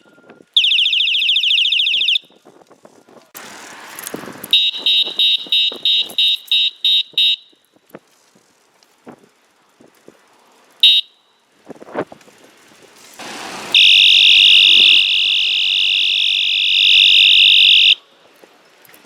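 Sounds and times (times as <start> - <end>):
bicycle horn shrill beep: 4.5 - 7.6, 10.8 - 11.4, 13.6 - 18.0
high electronic tone: 13.7 - 18.0.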